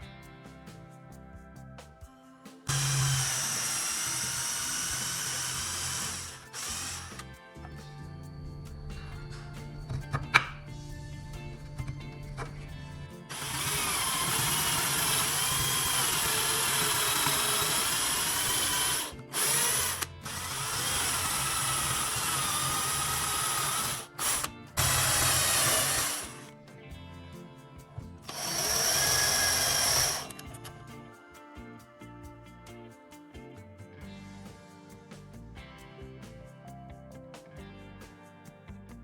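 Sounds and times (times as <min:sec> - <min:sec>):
background music: 0:00.0 - 0:39.0
power tool motor whining: 0:02.7 - 0:07.3, 0:13.3 - 0:26.5, 0:28.3 - 0:30.6.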